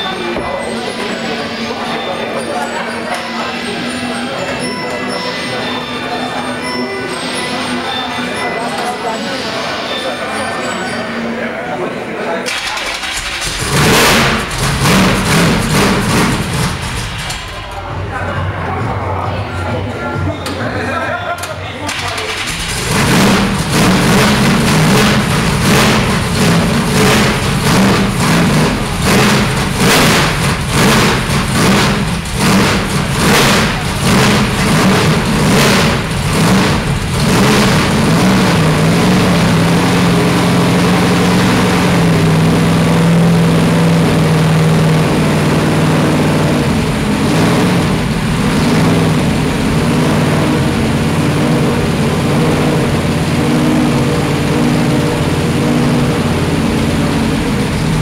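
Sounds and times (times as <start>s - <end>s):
race car engine revving: 12.5s - 18.4s, 21.9s - 58.0s.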